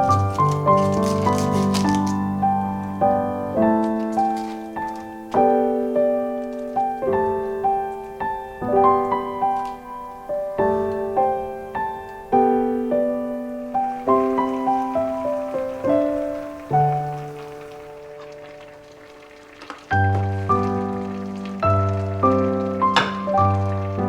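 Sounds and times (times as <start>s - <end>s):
gentle piano melody: 0.0s - 24.0s.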